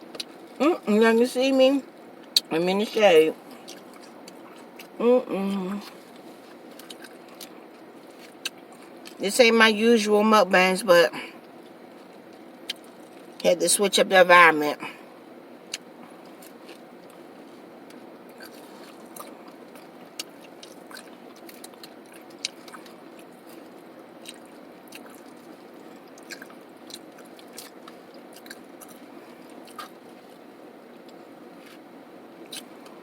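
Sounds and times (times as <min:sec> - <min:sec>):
air conditioning hum: 0:00.0 - 0:33.0
person chewing crunchy chips: 0:03.4 - 0:09.2, 0:15.7 - 0:33.0.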